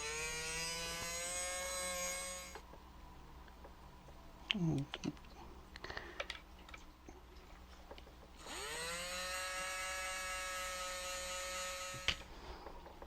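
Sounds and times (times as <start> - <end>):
small electric motor whining: 0.0 - 2.6, 8.4 - 12.3.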